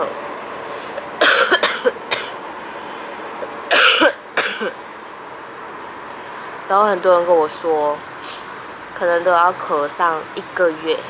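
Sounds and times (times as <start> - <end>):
woman coughing hard: 1.2 - 2.4, 3.7 - 4.8.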